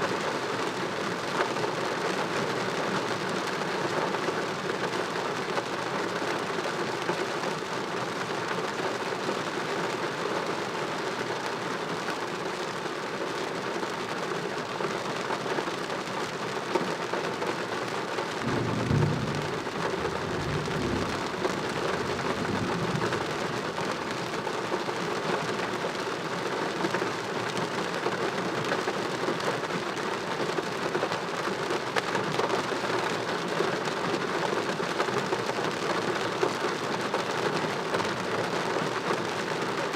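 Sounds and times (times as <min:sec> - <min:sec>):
heavy rain falling: 0:00.0 - 0:39.9
thunder rumbling: 0:18.4 - 0:24.4.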